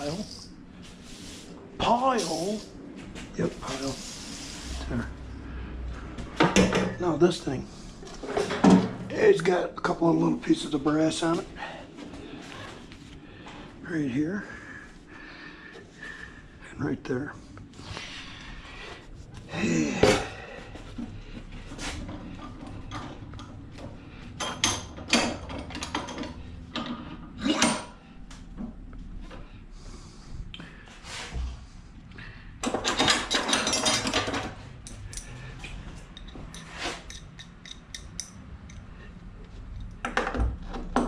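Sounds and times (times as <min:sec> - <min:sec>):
metal rattling and scraping: 0:32.6 - 0:35.4
hand tools clanking on metal: 0:32.6 - 0:35.5, 0:36.1 - 0:38.9.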